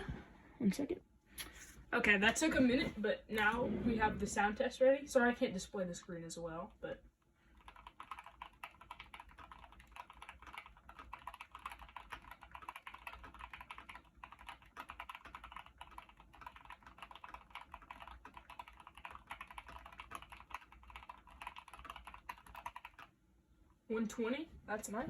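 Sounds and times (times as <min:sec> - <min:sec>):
fast mechanical keyboard typing: 0:07.6 - 0:23.1.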